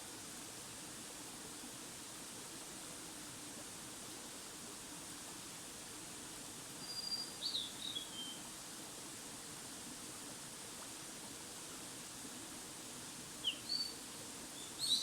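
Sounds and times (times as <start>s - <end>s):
steady outdoor hiss: 0.0s - 15.0s
bird whistled call: 13.4s - 13.9s.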